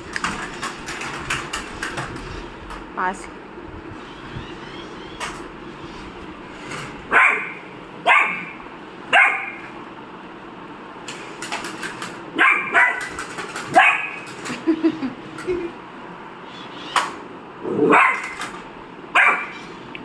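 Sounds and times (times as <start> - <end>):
dog barking: 7.1 - 9.7, 12.4 - 13.1, 13.7 - 14.2, 17.8 - 18.4, 19.1 - 19.6.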